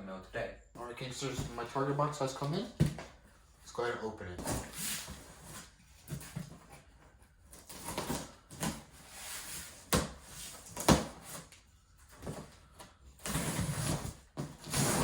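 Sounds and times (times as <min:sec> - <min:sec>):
cardboard rustling and scraping: 0:04.4 - 0:15.0.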